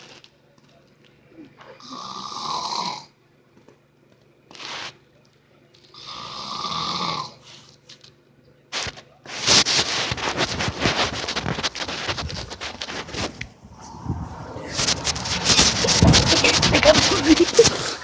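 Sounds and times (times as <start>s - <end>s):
crackling knocks: 10.6s - 18.0s.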